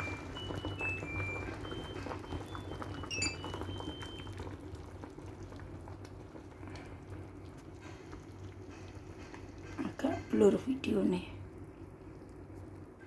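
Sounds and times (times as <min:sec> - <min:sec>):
soup bubbling in a pot: 0:00.0 - 0:13.0.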